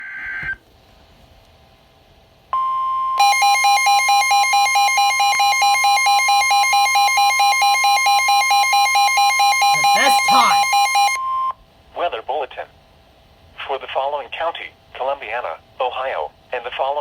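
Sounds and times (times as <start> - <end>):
harsh pulsing alarm tone: 3.2 - 11.2
steady alert tone: 9.7 - 10.9.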